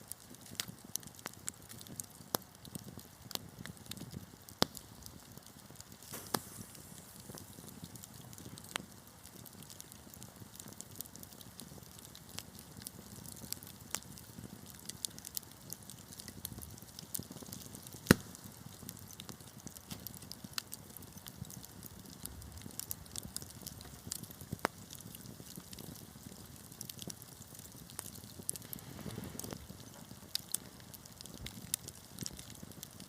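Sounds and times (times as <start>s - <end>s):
wood fire crackling: 0.0s - 33.0s
low rush of flame: 2.7s - 10.8s, 27.5s - 32.9s
loud sharp pop: 6.0s - 7.4s, 18.0s - 18.4s.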